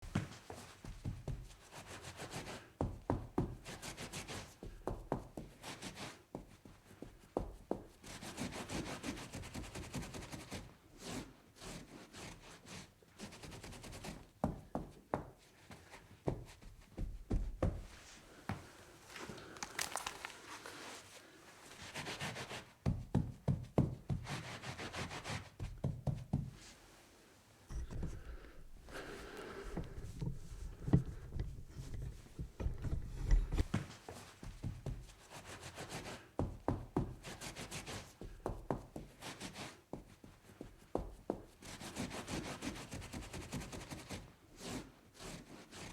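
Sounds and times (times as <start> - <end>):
scrubbing on a tabletop: 18.0 - 22.7
light knocks and taps: 29.7 - 35.0.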